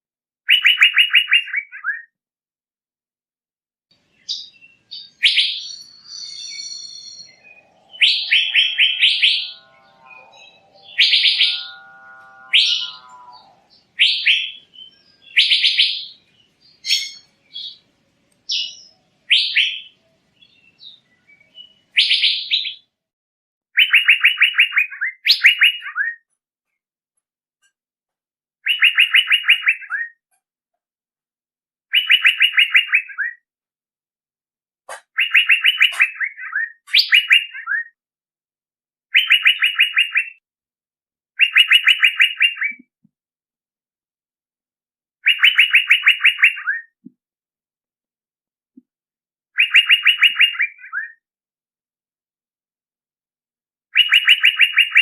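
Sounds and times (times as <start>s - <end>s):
bird calling with sharp notes: 0.5s - 2.1s, 4.2s - 17.8s, 18.5s - 22.9s, 28.6s - 30.2s, 31.9s - 33.4s, 34.9s - 38.0s, 39.1s - 40.4s, 41.4s - 42.9s, 45.2s - 47.0s, 49.5s - 51.2s, 54.0s - 55.0s
low steady tone: 6.7s - 13.9s.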